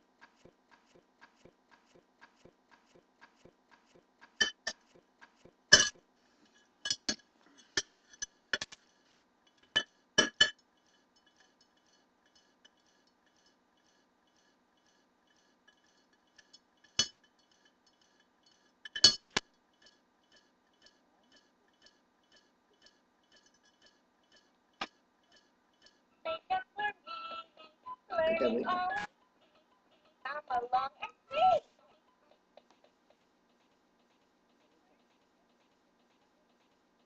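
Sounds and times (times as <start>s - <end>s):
cutlery clinking against dishes: 4.4s - 4.9s, 6.9s - 8.8s, 9.6s - 10.6s, 15.7s - 19.4s.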